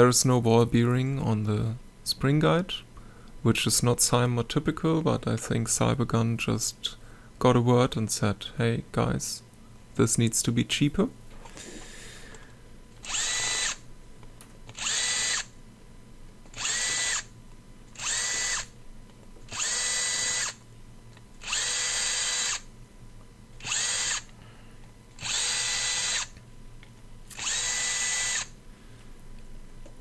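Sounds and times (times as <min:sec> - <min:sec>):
power screwdriver motor whirring: 0:13.0 - 0:13.8, 0:14.7 - 0:15.5, 0:16.5 - 0:17.3, 0:18.0 - 0:18.7, 0:19.5 - 0:20.6, 0:21.4 - 0:22.7, 0:23.6 - 0:24.3, 0:25.2 - 0:26.4, 0:27.3 - 0:28.5.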